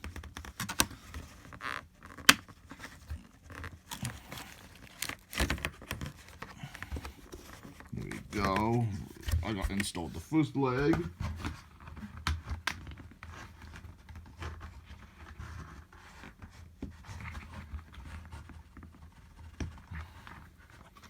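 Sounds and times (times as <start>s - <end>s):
light plastic scraping: 0.0s - 15.9s.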